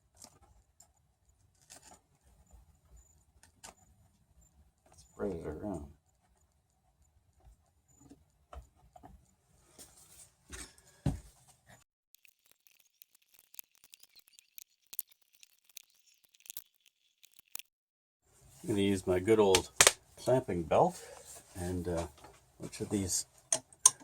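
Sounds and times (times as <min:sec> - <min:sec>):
small clicks and scrapes: 0:00.0 - 0:05.1, 0:11.7 - 0:17.7.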